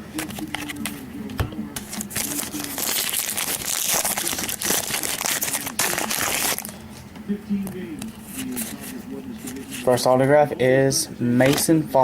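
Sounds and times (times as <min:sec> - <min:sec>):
foil wrapper crinkling: 0:00.2 - 0:01.0, 0:01.8 - 0:06.8.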